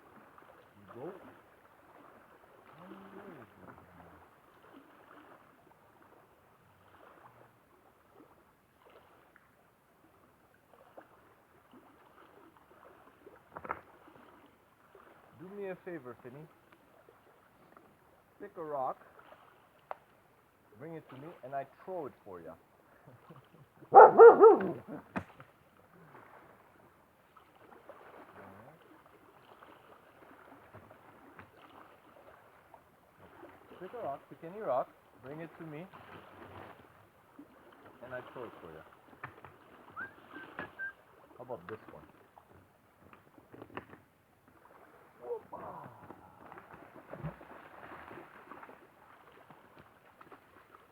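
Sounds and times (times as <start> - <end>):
light splashes: 0.0 - 22.3, 22.9 - 50.9
small waves lapping: 0.0 - 50.9
person calling out: 24.1 - 25.0.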